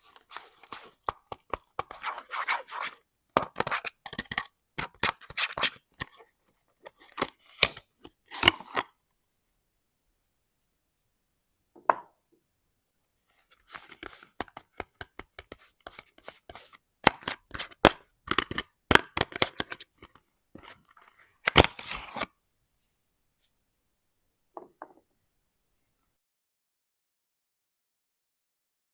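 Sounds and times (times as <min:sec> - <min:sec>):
soap packaging crinkling and tearing: 0:13.7 - 0:22.3.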